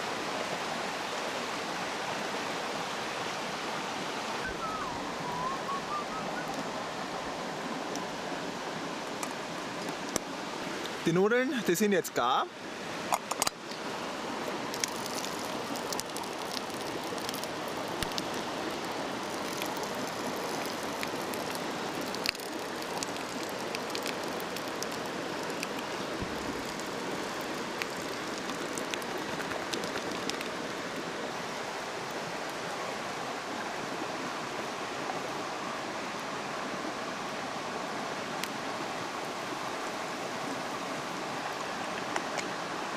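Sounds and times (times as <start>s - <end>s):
bacon sizzling in a pan: 14.7s - 30.4s.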